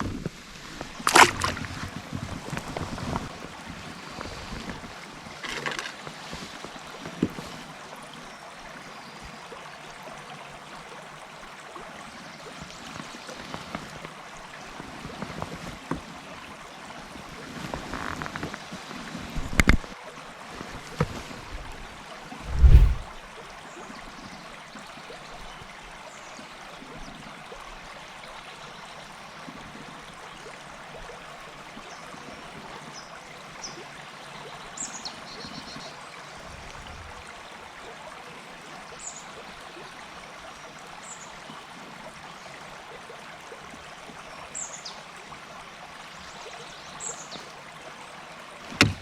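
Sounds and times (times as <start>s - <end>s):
river water running: 0.0s - 49.0s
short low thump: 22.4s - 23.2s.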